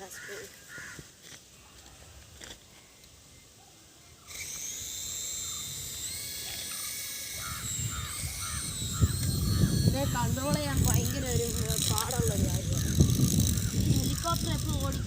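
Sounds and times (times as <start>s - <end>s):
toy helicopter motors whining: 4.2s - 15.0s.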